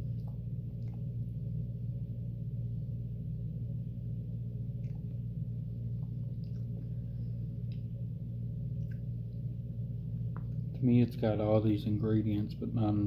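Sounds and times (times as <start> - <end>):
man chewing food: 0.0 - 1.6, 4.6 - 9.5
steady low hum: 0.0 - 13.0.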